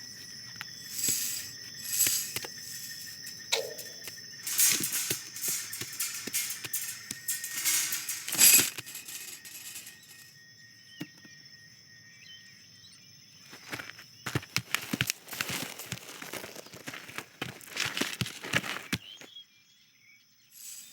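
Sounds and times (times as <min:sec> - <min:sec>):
crackling rustling noises: 0:00.0 - 0:10.3, 0:13.7 - 0:19.0
faint steady high tones: 0:00.0 - 0:10.8.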